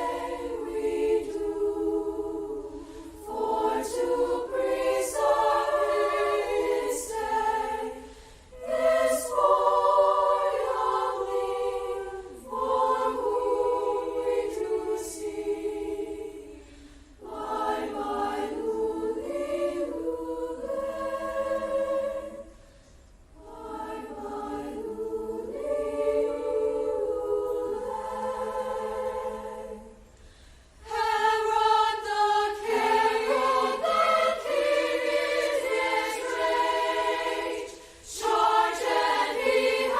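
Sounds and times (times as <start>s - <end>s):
choir singing in harmony: 0.0s - 39.9s.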